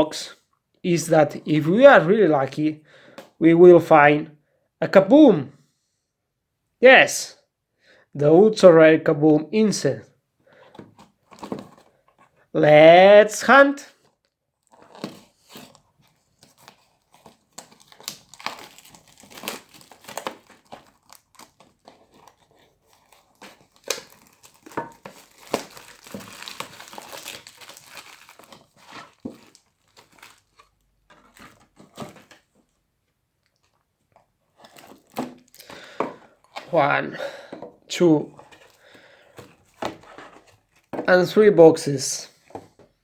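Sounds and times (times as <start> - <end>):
plastic wrap crinkling and tearing: 13.8 - 32.8, 33.4 - 36.8.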